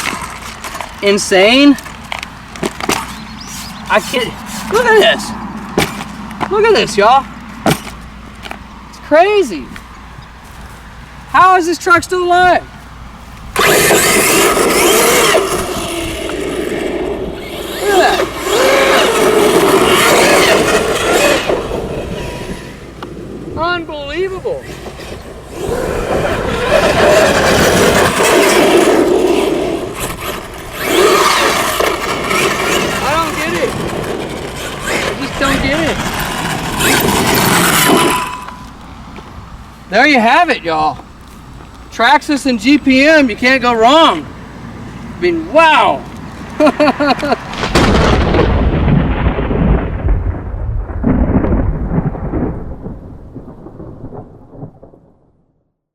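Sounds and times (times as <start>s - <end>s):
rough tyre noise: 0.0s - 52.5s
electric motor whining: 13.5s - 23.4s, 24.7s - 39.0s
thunder rumbling: 47.5s - 55.6s.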